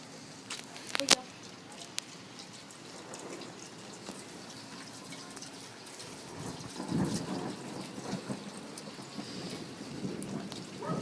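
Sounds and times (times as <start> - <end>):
steady rain: 0.0 - 11.0
thunder rumble: 2.8 - 11.0.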